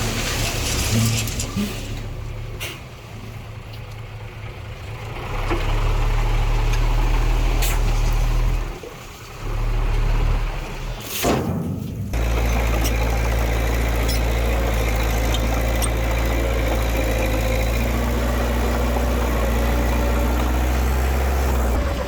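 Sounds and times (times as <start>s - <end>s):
heavy diesel engine running: 9.4s - 22.0s.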